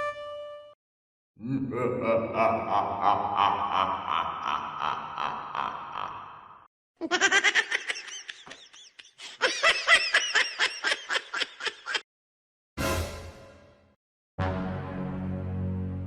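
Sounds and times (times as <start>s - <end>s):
high-pitched laughter effect: 7.0s - 12.0s.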